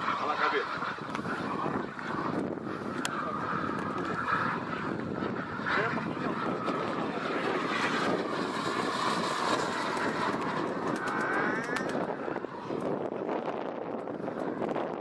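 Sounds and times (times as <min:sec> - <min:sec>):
wind noise on microphone: 0:00.0 - 0:15.0
model jet turbine whining: 0:05.0 - 0:14.9.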